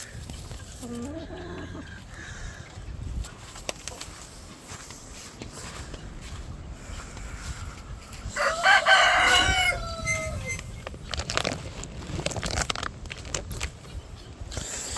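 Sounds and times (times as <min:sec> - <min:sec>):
rustles: 0:00.0 - 0:14.9
chicken clucks: 0:00.2 - 0:02.8
rooster crowing: 0:08.3 - 0:10.6.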